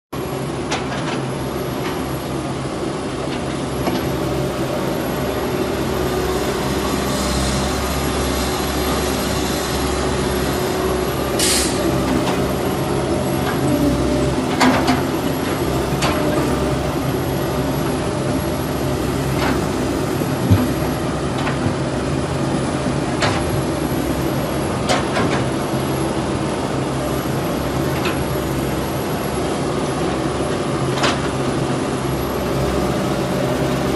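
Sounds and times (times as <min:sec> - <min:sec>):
heavy diesel machinery running: 0:00.2 - 0:33.9
short hiss: 0:11.4 - 0:11.8.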